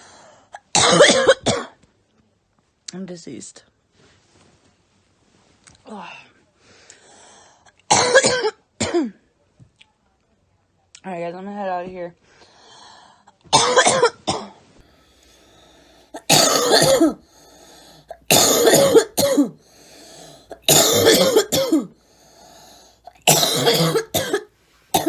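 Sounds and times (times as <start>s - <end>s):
woman coughing: 0.6s - 1.8s, 7.9s - 9.2s, 13.5s - 14.6s, 16.2s - 17.2s, 18.1s - 19.6s, 20.4s - 22.0s, 23.1s - 25.0s.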